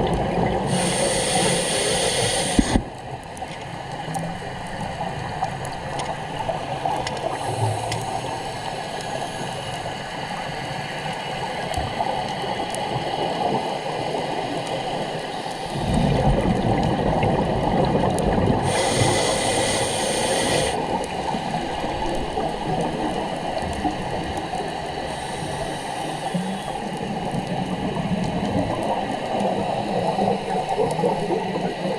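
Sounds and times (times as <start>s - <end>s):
underwater rushing water: 0.0s - 31.9s
brief hiss: 0.7s - 2.8s, 18.7s - 20.8s
faint clicks: 7.0s - 8.2s
low gurgling: 11.4s - 31.9s.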